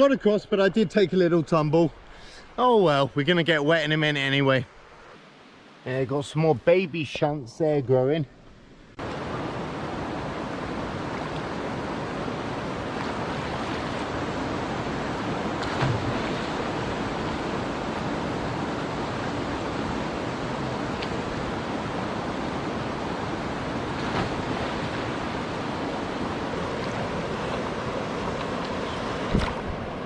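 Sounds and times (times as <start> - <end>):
river water rushing: 9.0 - 30.0.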